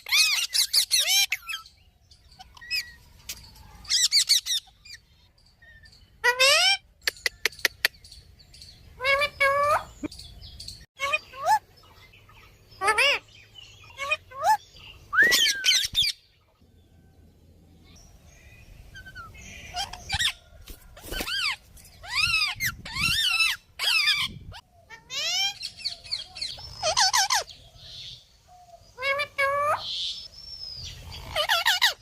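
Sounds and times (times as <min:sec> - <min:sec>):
parrot shrill calls: 0:00.0 - 0:01.7, 0:03.8 - 0:05.1, 0:06.2 - 0:06.9, 0:12.8 - 0:13.2, 0:13.8 - 0:14.6, 0:15.2 - 0:16.2, 0:19.0 - 0:20.4, 0:21.2 - 0:27.5, 0:31.2 - 0:32.0.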